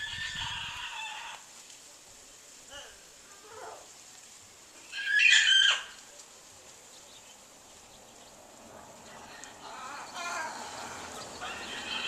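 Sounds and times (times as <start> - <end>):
large bird calling: 4.8 - 6.1, 9.6 - 12.0.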